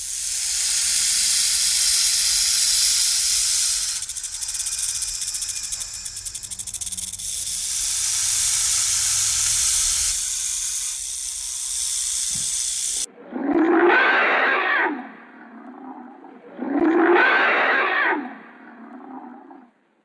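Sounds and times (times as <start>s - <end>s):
fast even flutter: 0.0s - 13.1s
steady hissing: 0.0s - 13.1s.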